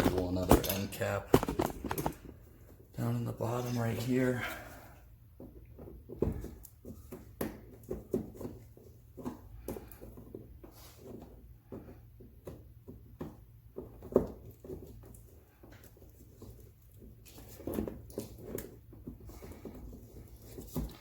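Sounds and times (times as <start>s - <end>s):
hand tools clicking on plastic: 0.0s - 2.3s.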